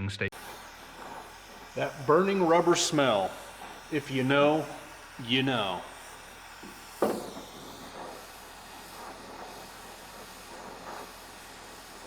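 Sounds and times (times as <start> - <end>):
steady background hiss: 0.4 - 12.0
sharp knock: 7.0 - 7.4.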